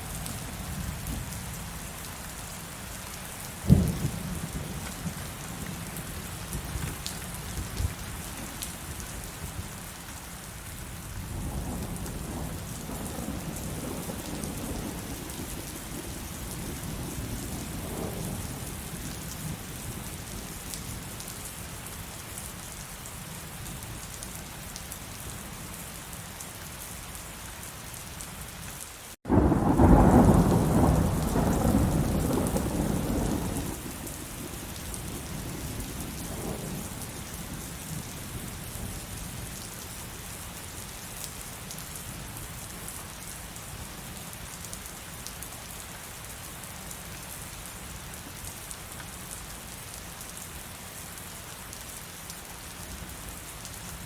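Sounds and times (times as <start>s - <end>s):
heavy rain falling: 0.0s - 54.0s
low rolling thunder: 3.7s - 5.9s, 11.3s - 19.7s, 29.3s - 38.2s.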